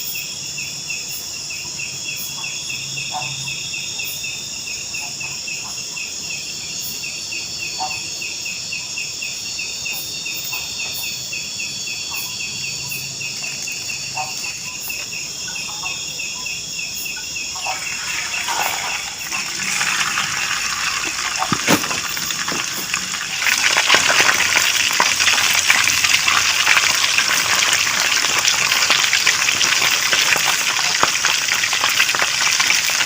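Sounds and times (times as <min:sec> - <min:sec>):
crickets buzzing and chirping: 0:00.0 - 0:33.0
rushing water: 0:17.6 - 0:33.0.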